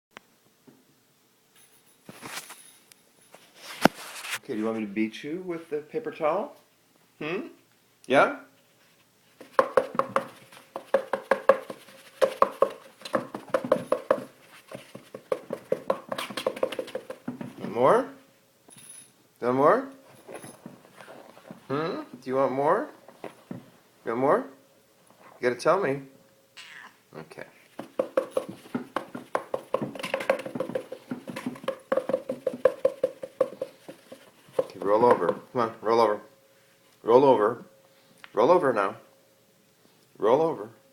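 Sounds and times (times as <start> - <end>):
hollow taps on cat: 9.4 - 17.6, 27.8 - 35.5.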